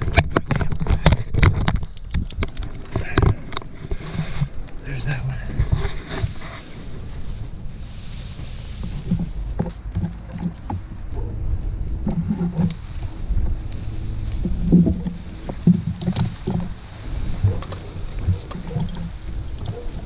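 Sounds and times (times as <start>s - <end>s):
wind noise on microphone: 0.0s - 20.0s
short knocks and rustles: 8.1s - 20.0s.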